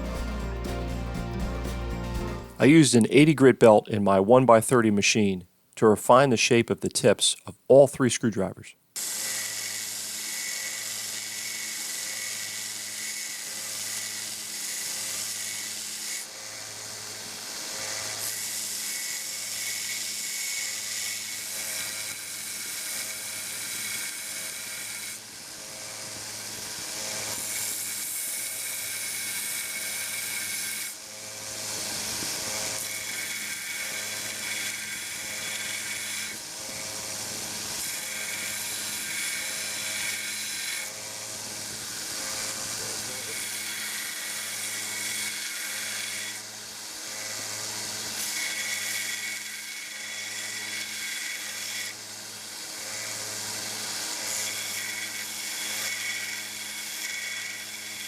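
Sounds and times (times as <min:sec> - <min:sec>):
belt sander motor hum: 0:09.0 - 0:58.0
steel grinding on sander belt: 0:09.0 - 0:58.0.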